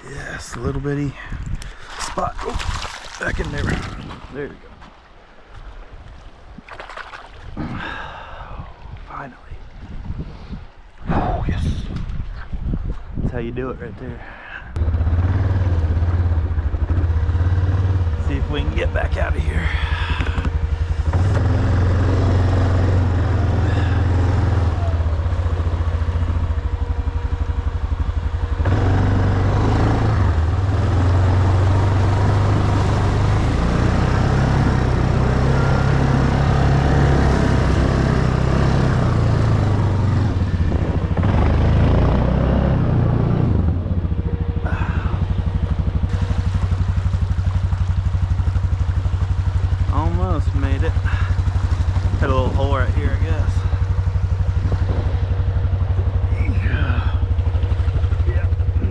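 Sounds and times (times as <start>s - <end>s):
atv engine running under load: 14.8s - 58.9s.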